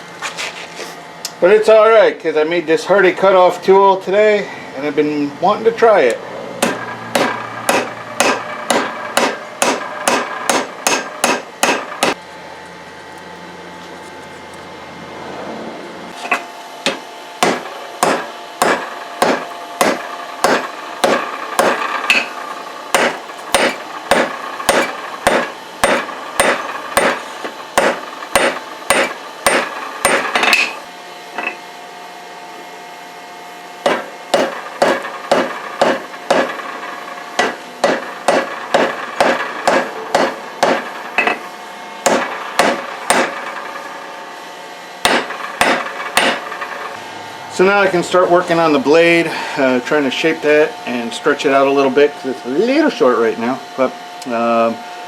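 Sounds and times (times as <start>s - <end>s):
hammer striking steel on anvil: 6.6s - 12.2s, 16.2s - 30.8s, 31.4s - 31.6s, 33.8s - 43.9s, 45.0s - 47.0s.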